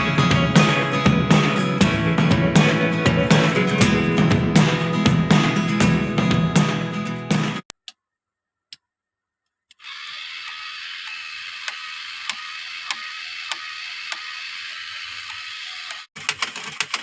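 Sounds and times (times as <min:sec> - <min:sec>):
small electric motor whirring: 0:09.8 - 0:16.1.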